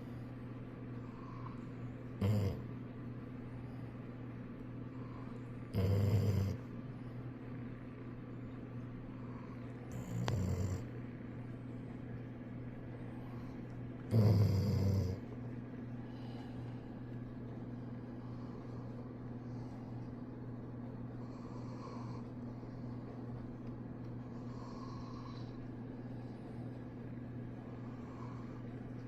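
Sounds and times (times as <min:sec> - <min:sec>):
dog snoring: 0:02.2 - 0:02.7, 0:05.0 - 0:06.7, 0:09.3 - 0:11.0, 0:14.1 - 0:15.3, 0:21.3 - 0:22.2, 0:24.3 - 0:25.5.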